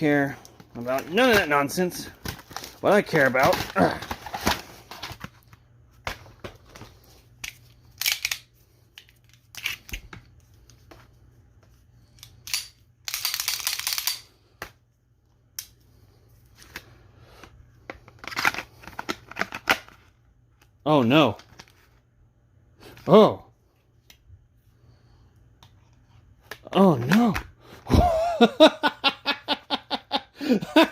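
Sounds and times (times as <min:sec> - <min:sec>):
plastic toy clicks and rattles: 0:12.5 - 0:14.2.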